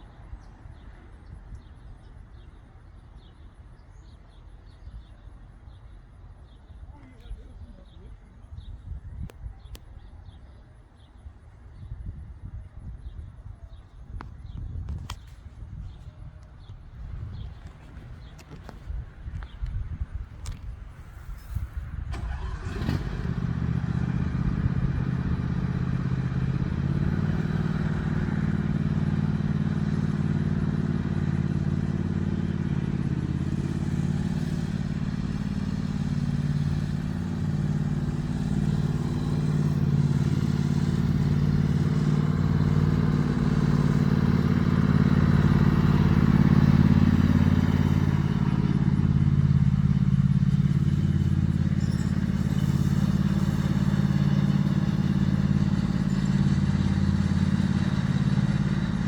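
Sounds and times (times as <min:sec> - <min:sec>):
engine running steadily: 0:12.8 - 0:59.0.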